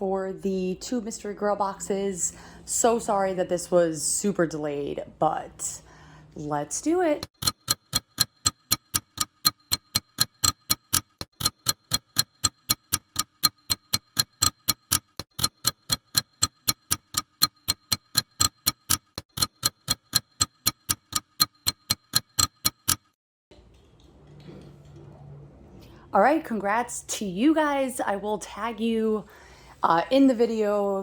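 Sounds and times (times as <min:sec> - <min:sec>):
rapid plucked ticking: 0:07.2 - 0:23.2.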